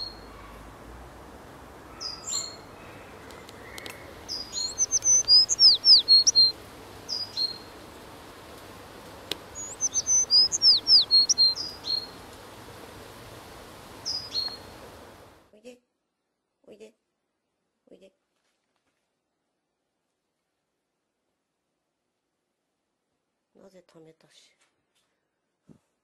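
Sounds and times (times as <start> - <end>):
songbird singing: 0.0 - 0.7, 1.7 - 15.3.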